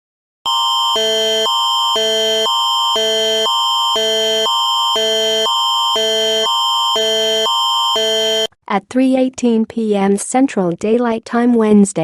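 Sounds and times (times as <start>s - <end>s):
alternating alert tones: 0.5s - 8.5s
steady high tone: 0.5s - 8.5s.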